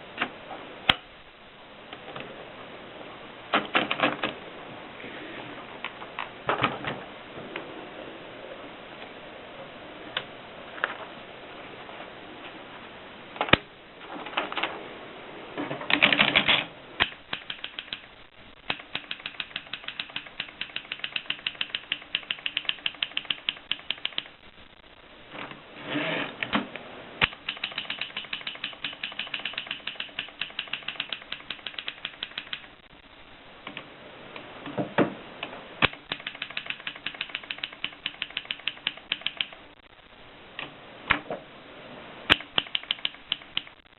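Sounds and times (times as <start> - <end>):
manual typewriter key strikes: 15.9 - 18.1, 18.7 - 24.3, 27.2 - 32.7, 35.8 - 39.6, 42.3 - 43.8
typewriter rattling: 15.9 - 18.1, 18.7 - 24.3, 27.2 - 32.7, 35.8 - 39.6, 42.3 - 43.8.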